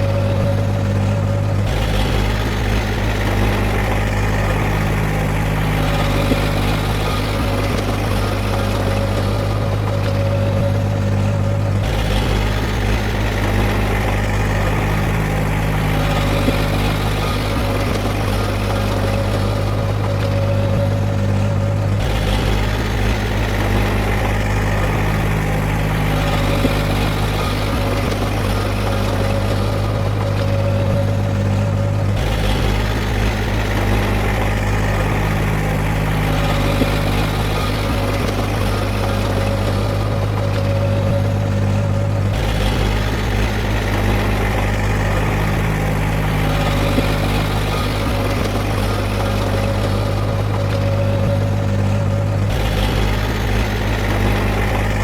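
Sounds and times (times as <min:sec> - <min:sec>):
diesel engine low drone: 0:00.0 - 0:55.0.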